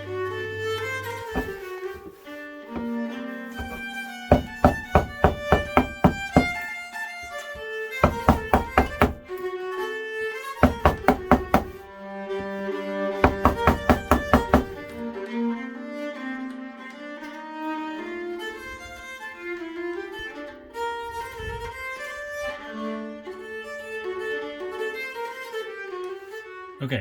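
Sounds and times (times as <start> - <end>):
folk fiddle music: 0.0 - 27.0
rapid sharp knocks: 1.3 - 2.1, 3.6 - 6.6, 8.0 - 9.3, 10.6 - 11.8, 13.2 - 14.8.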